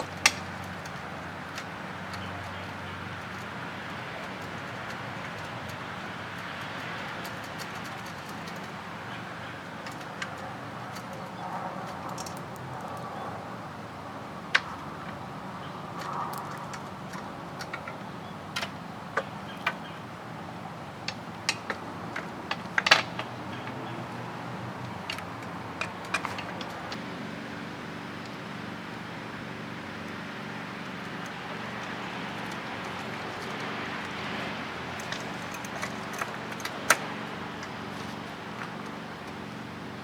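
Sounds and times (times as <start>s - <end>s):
small metal parts clinking: 0.0s - 13.1s, 31.6s - 39.0s.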